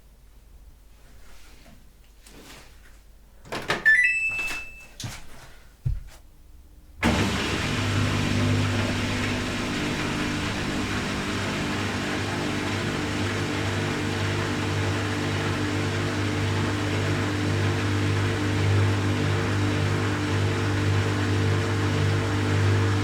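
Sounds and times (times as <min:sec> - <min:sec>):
washing machine hum and rushing: 0:07.0 - 0:23.0.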